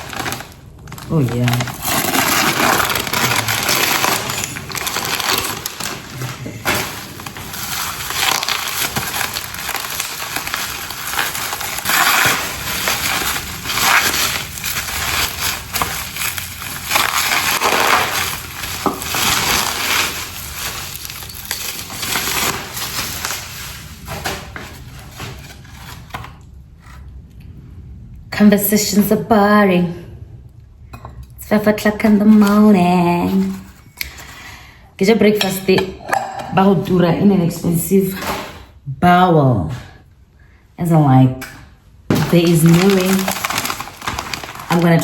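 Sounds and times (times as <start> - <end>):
packing material crinkling: 0.0 - 26.2, 42.1 - 45.0.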